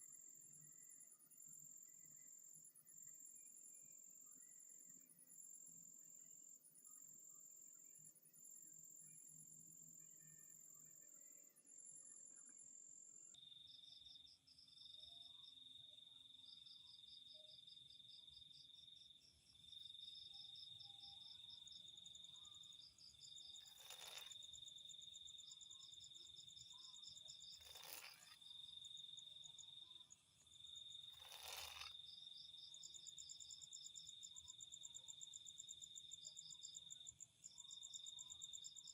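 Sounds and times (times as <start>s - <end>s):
crickets trilling: 21.4s - 38.9s.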